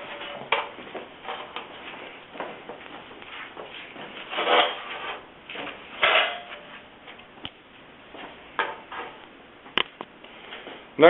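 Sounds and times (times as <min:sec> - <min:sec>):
metal parts scraping: 0:04.3 - 0:05.2.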